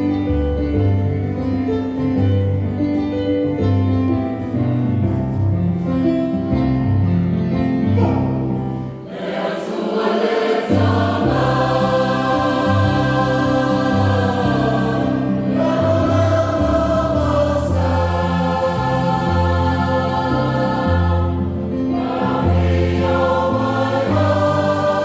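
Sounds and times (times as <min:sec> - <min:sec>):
choir singing: 0:09.0 - 0:25.0.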